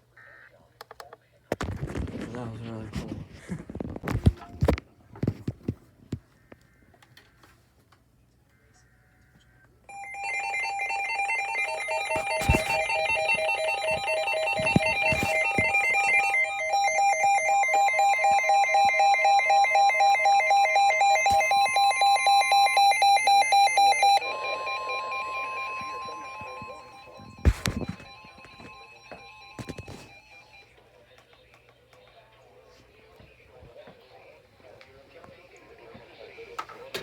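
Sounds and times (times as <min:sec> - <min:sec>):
rapid ringing alert beep: 0:09.9 - 0:30.5
steady high tone: 0:09.9 - 0:30.6.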